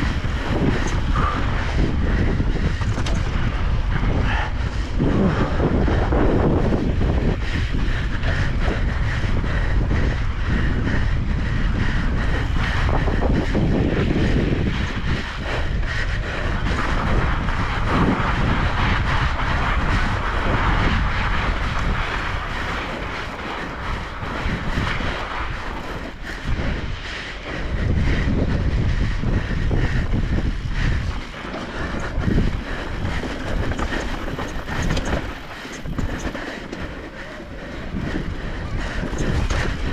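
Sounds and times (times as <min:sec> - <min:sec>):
wind buffeting microphone: 0:00.0 - 0:39.9
tyre rumble on sandy trail: 0:16.4 - 0:26.8, 0:30.4 - 0:39.9.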